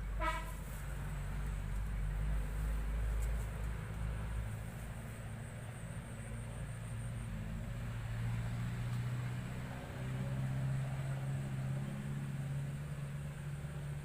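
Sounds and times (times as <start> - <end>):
engine hum: 0.0 - 14.0.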